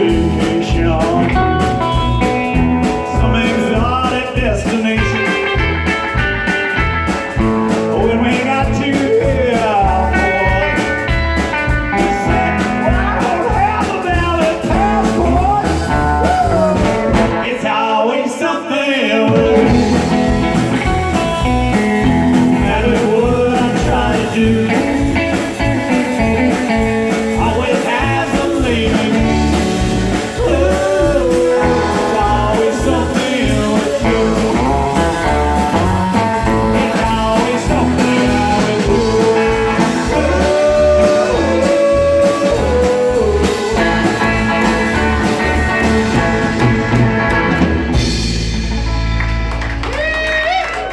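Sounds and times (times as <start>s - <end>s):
live blues-rock band: 0.0s - 17.9s, 19.1s - 50.9s
guitar: 0.0s - 50.9s.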